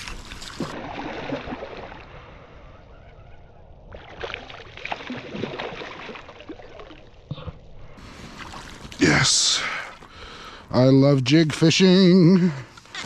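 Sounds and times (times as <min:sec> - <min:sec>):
water lapping and gurgling: 0:00.0 - 0:03.2, 0:03.8 - 0:10.7.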